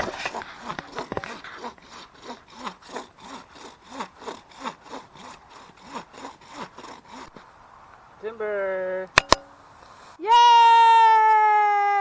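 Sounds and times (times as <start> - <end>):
hand saw cutting tree trunk: 0.0 - 7.5.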